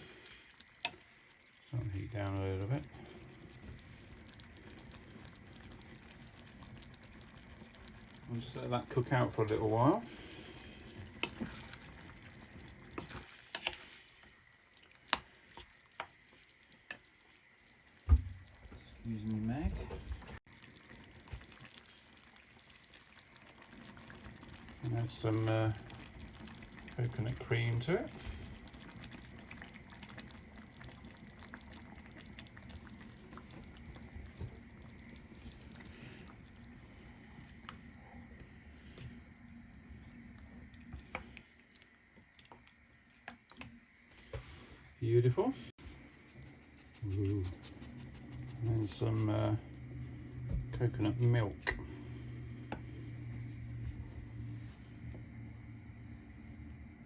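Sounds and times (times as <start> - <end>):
low hiss: 0.0 - 20.4, 23.7 - 31.2, 42.6 - 57.0
sauce bubbling and popping: 0.0 - 44.5, 45.7 - 57.0.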